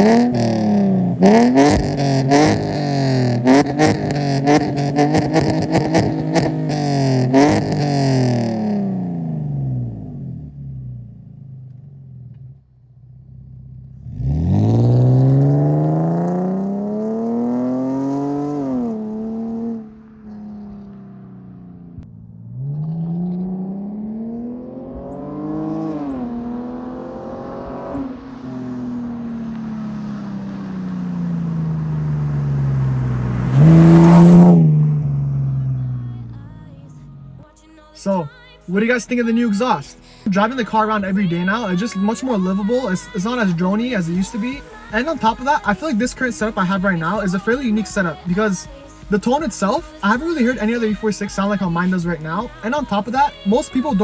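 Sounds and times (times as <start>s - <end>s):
loud exhaust blast: 0.0s - 12.3s, 28.0s - 37.4s
car exhaust under hard acceleration: 0.0s - 37.4s.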